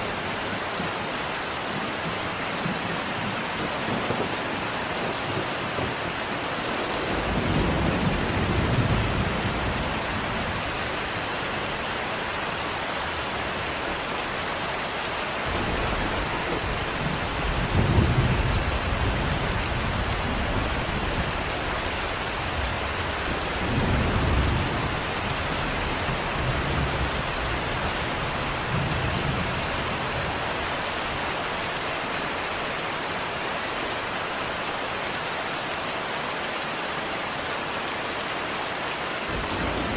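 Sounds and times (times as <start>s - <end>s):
steady rain falling: 0.0s - 39.9s
low rolling thunder: 6.9s - 11.2s, 15.4s - 31.2s, 39.3s - 39.9s.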